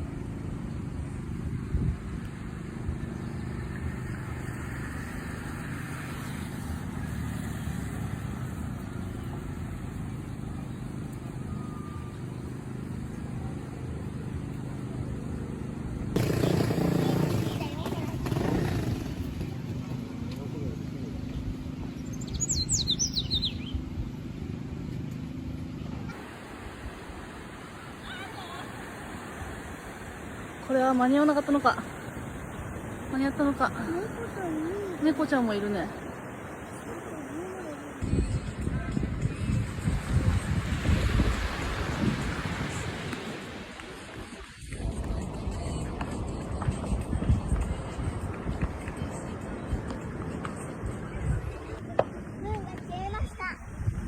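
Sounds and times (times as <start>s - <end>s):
vehicle engine droning: 0.0s - 26.3s
finch singing high whistled notes: 22.2s - 23.7s.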